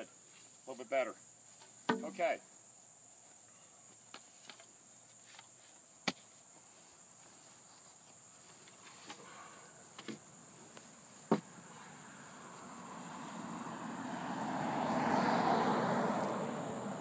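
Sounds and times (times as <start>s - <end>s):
insect chirring: 0.0s - 17.0s
sharp knocks: 1.9s - 2.2s, 11.3s - 11.5s.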